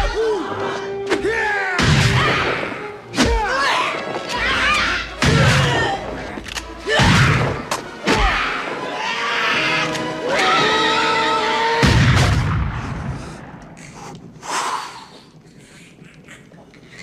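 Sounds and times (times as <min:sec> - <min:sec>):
orchestral music: 0:00.0 - 0:12.6.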